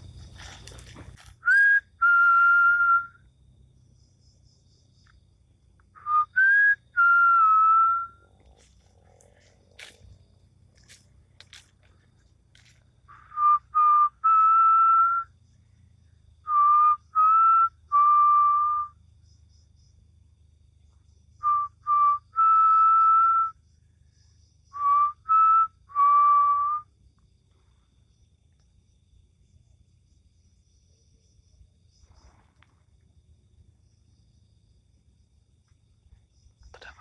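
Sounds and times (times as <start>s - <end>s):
man whistling a three-note call: 1.4s - 3.2s, 6.0s - 8.2s, 13.2s - 15.3s, 16.5s - 19.0s, 21.4s - 23.6s, 24.8s - 26.9s.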